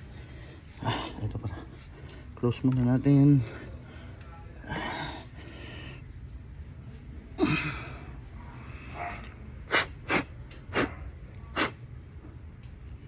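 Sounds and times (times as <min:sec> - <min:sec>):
person breathing: 0:00.0 - 0:02.4, 0:03.4 - 0:06.1
sharp puffs of breath: 0:09.7 - 0:10.9, 0:11.5 - 0:11.8.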